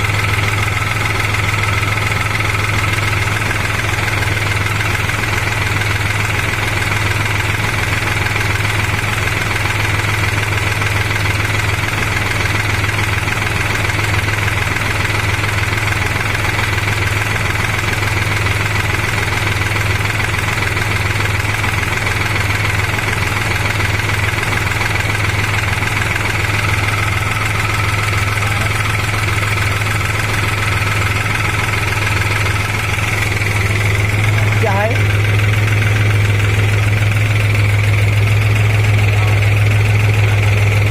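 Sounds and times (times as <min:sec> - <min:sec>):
tractor diesel engine running: 0:00.0 - 0:40.9.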